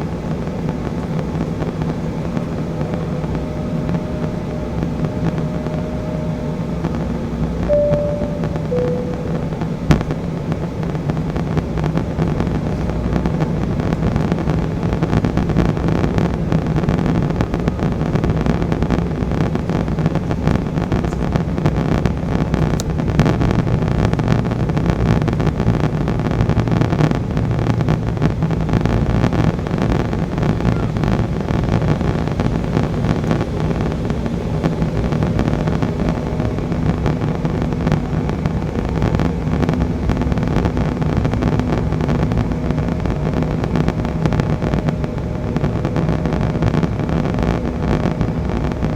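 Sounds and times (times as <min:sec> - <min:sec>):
faint steady hum: 0:07.7 - 0:10.2.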